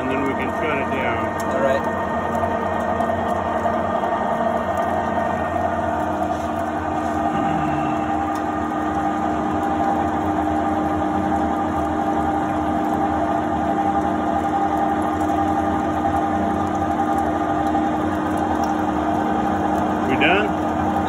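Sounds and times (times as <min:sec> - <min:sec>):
threading machine humming: 0:07.2 - 0:09.2.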